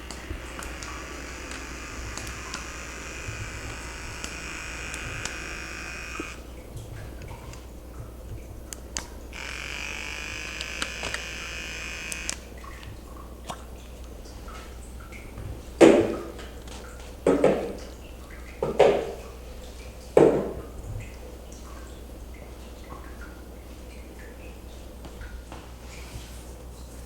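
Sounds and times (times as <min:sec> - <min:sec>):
small electric device buzzing: 0:00.0 - 0:06.5, 0:09.3 - 0:12.5.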